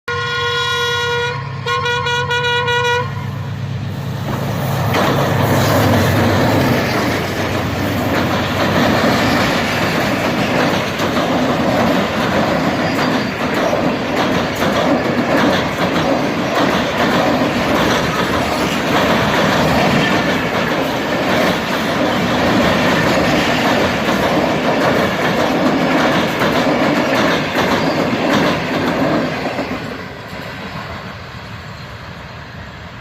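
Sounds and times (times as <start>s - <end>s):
train horn: 0.0s - 3.6s
train passing at high speed: 0.1s - 33.0s.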